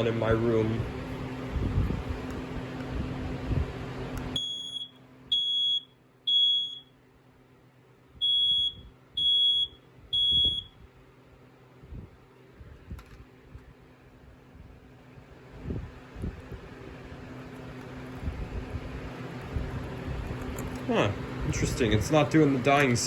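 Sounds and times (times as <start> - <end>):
smoke alarm beeping: 4.4 - 7.0, 8.2 - 10.8.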